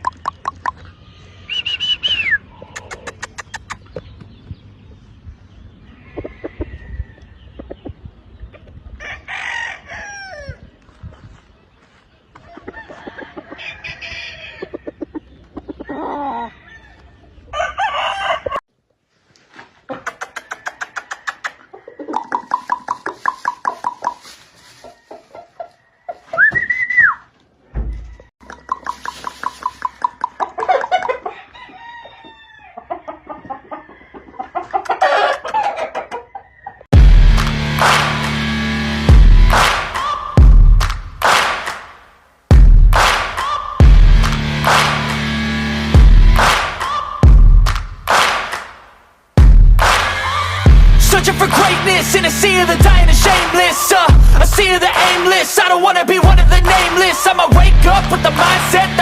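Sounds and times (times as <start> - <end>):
hens clucking: 0.0 - 1.0, 1.6 - 4.3, 5.8 - 10.0, 11.9 - 18.6, 19.8 - 26.5, 27.6 - 36.9, 39.6 - 40.4, 51.1 - 59.0
roosters crowing: 5.8 - 7.5, 9.0 - 10.6, 12.4 - 15.0, 15.8 - 18.7, 20.2 - 26.6, 27.6 - 36.9, 37.8 - 41.5, 43.0 - 47.5, 49.8 - 59.0.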